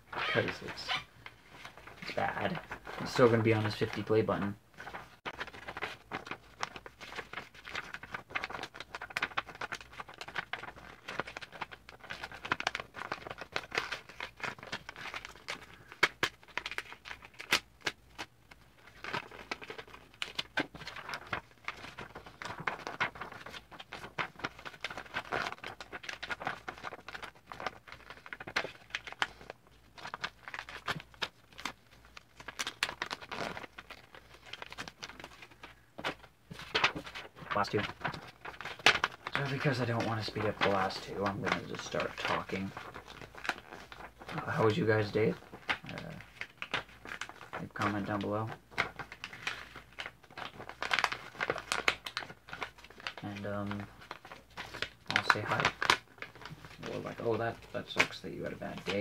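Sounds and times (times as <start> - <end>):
sharp paper crease crackles: 0.1 - 59.0
paper rustling and crinkling: 0.4 - 59.0.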